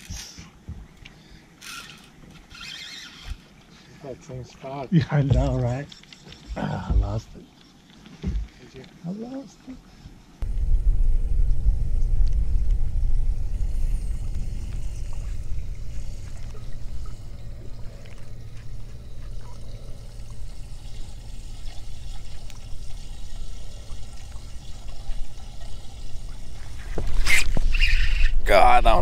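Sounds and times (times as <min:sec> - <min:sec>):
wind rumbling on microphone: 0:10.4 - 0:21.0
water lapping against boat hull: 0:12.7 - 0:28.3.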